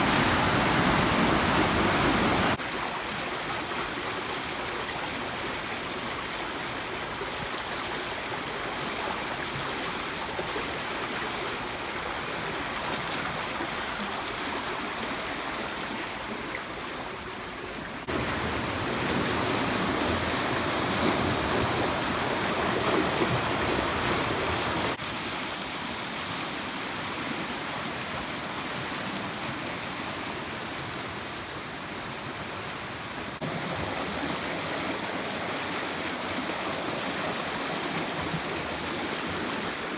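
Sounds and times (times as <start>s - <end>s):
river water rushing over rocks: 0.0s - 16.4s, 18.0s - 31.7s.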